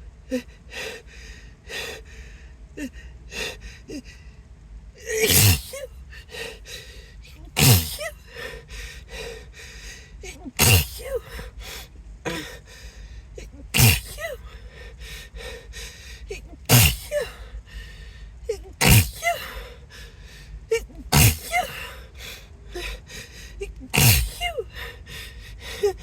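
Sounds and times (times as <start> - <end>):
person sneezing: 5.1 - 5.9, 7.4 - 8.5, 10.2 - 11.5, 12.3 - 12.6, 13.4 - 14.5, 16.3 - 17.5, 18.5 - 19.7, 20.7 - 22.0, 23.6 - 24.9
short breaths: 5.1 - 26.0.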